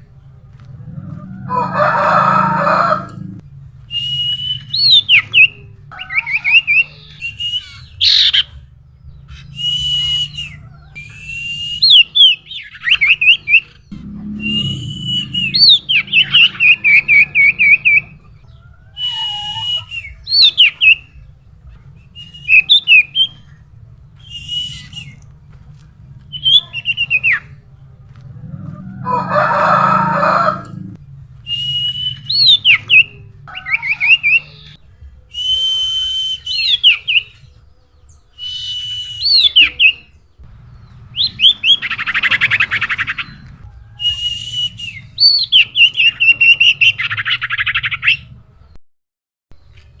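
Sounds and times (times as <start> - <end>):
bird whistled calls: 3.9 - 8.5, 9.3 - 18.3, 18.9 - 21.2, 22.1 - 23.6, 24.2 - 25.2, 26.3 - 27.5, 31.5 - 37.5, 38.4 - 40.1, 41.1 - 48.3.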